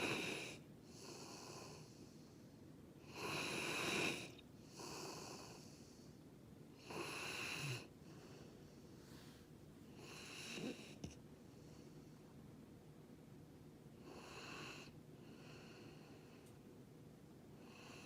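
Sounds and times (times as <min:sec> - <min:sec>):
dog snoring: 0:00.0 - 0:02.1, 0:03.0 - 0:06.0, 0:06.8 - 0:08.4, 0:09.9 - 0:11.2, 0:14.0 - 0:16.2, 0:17.6 - 0:18.0.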